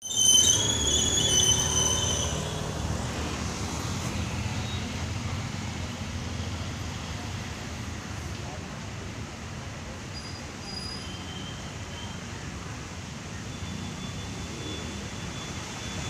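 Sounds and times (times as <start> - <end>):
high wavering squeal: 0.0 - 2.9
road traffic rumble: 0.0 - 16.0.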